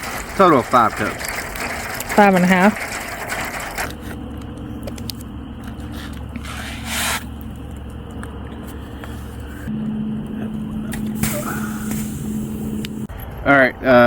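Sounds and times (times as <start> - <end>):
faint steady tones: 0.0 - 13.8
steady low hum: 0.0 - 14.0
short hiss: 11.2 - 12.6.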